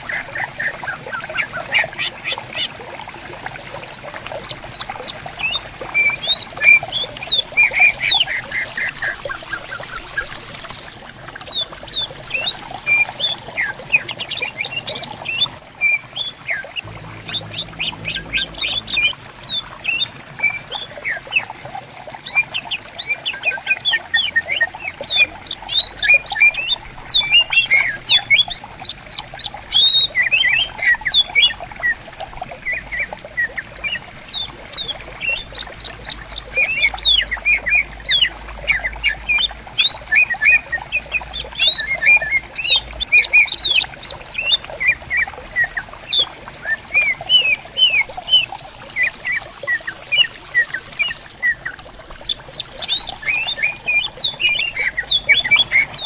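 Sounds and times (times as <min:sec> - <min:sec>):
stream babbling: 0:00.0 - 0:56.0
birds chirping and whistling: 0:23.4 - 0:28.6, 0:36.3 - 0:40.8, 0:41.6 - 0:43.9, 0:52.7 - 0:56.0.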